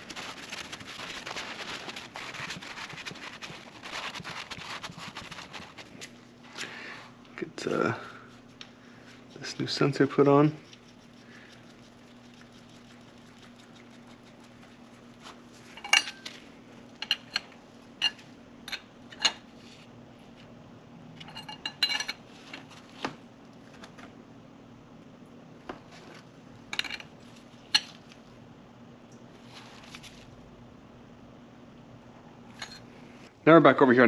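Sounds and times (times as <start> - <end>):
faint steady hum: 0.0 - 34.0
metal tools clinking: 21.2 - 22.2.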